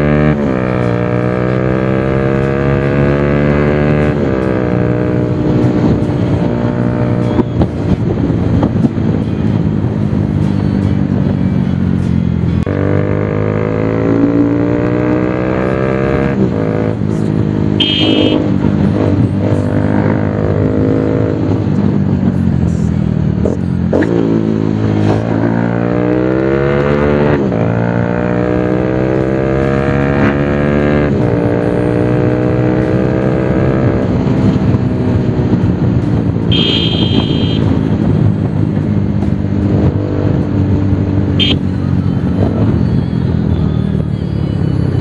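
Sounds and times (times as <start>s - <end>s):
motorcycle engine accelerating: 0.0s - 45.0s
horn beep: 17.8s - 18.7s, 36.4s - 37.9s, 41.3s - 41.8s.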